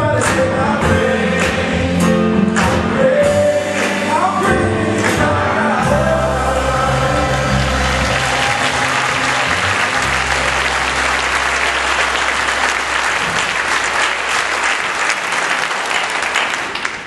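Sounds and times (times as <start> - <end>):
band holding low chord: 3.3 - 13.7
audience applauding: 6.8 - 17.0.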